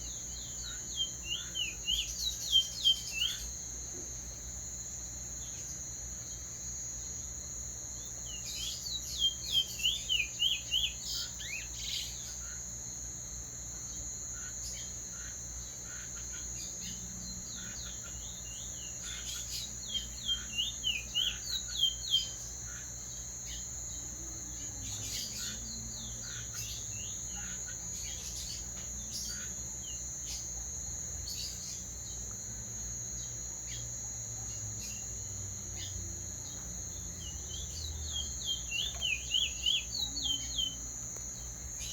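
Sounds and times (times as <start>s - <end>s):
faint bird chirps: 0.0s - 3.6s, 8.0s - 12.8s, 13.8s - 41.9s
songbird singing down-slurred notes: 0.0s - 3.6s, 8.2s - 12.3s, 16.7s - 22.4s, 34.5s - 41.9s
steady high-pitched drone: 0.0s - 41.9s.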